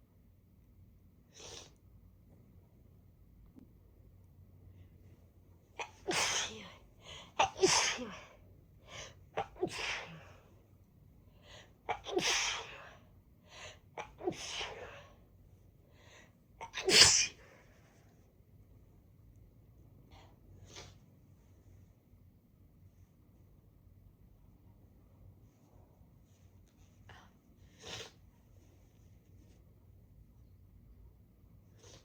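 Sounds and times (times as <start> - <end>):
person sneezing: 5.8 - 8.4, 9.3 - 10.4, 11.9 - 12.9, 14.0 - 15.0, 16.6 - 17.5.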